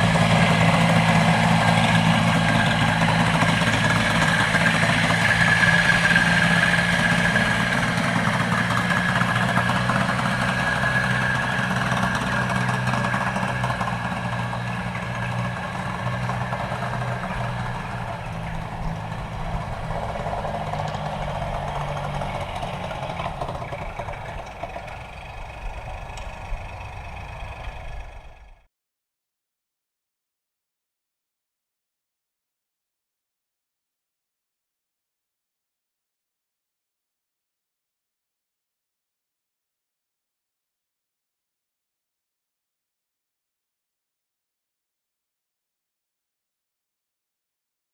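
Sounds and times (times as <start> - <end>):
tractor engine running: 0.0 - 28.7.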